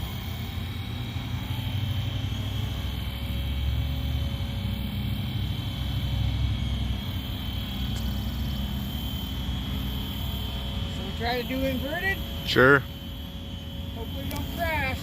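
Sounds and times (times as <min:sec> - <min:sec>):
rc helicopter whine: 0:00.0 - 0:15.0.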